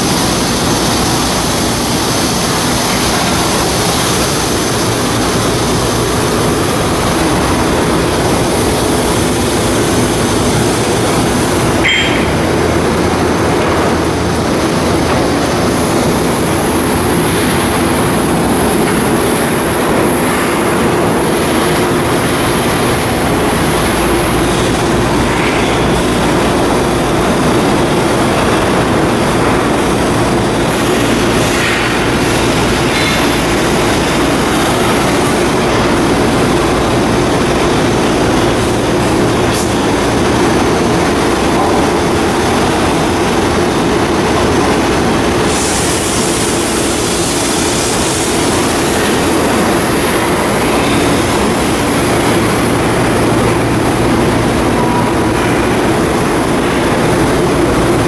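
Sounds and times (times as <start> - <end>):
loud mechanical noise: 0.0 - 58.0
bright hiss: 45.5 - 54.1.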